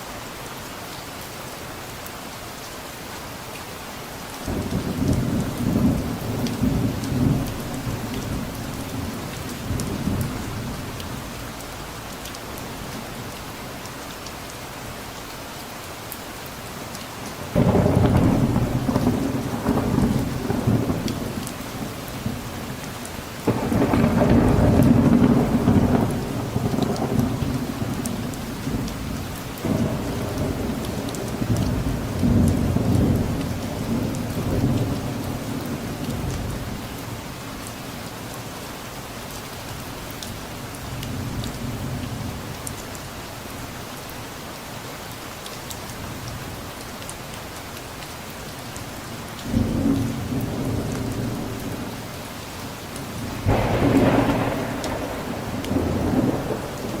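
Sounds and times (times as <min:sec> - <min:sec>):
steady rain: 0:00.0 - 0:57.0
thunder rolling: 0:17.5 - 0:22.5, 0:23.4 - 0:28.9, 0:53.2 - 0:57.0.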